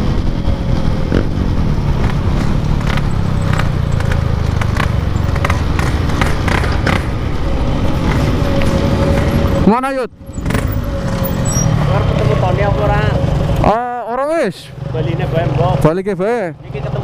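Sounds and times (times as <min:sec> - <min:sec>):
two-stroke motorcycle engine running: 0:00.0 - 0:09.6.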